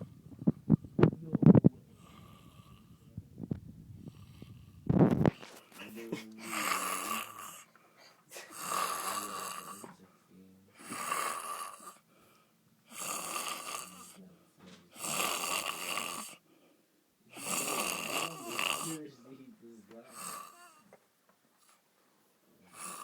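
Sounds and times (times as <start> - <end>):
man snoring loudly: 6.0 - 7.7, 8.5 - 9.9, 10.8 - 12.0, 12.9 - 14.2, 15.0 - 16.4, 17.3 - 19.0, 20.1 - 20.8, 22.7 - 23.0.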